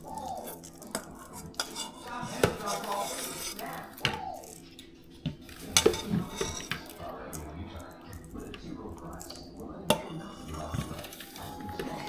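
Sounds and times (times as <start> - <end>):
utensil clinking against dishes: 0.0 - 12.0.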